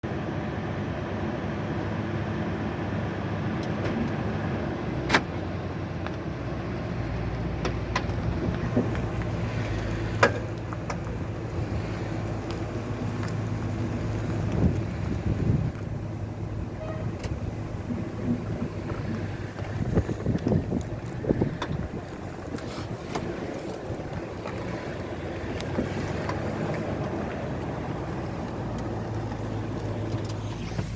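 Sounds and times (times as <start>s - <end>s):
low hum of vehicle running: 0.0s - 30.9s
sharp clicks from vehicle: 3.6s - 4.4s, 5.0s - 5.4s, 6.0s - 6.3s, 7.2s - 30.9s.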